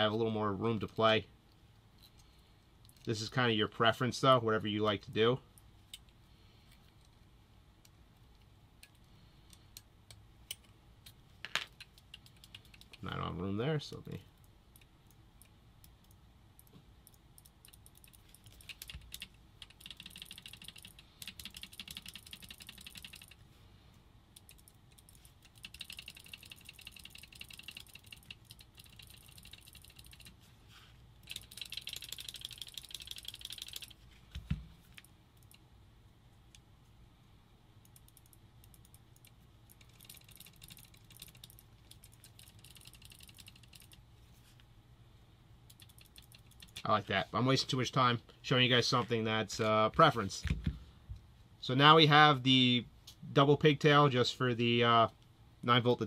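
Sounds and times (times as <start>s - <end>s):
rapid small clicking and rattling: 8.3s - 13.2s, 13.9s - 23.5s, 24.3s - 30.5s, 31.2s - 35.6s, 37.8s - 44.1s, 45.7s - 46.9s.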